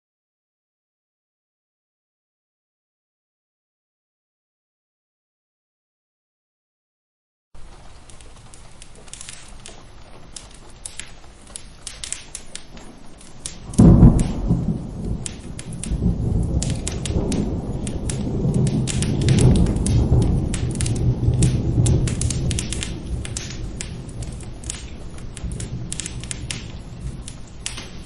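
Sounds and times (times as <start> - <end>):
steady rain: 7.6 - 28.0
thunderclap rumbling: 7.6 - 28.0
wood fire crackling: 7.6 - 28.0.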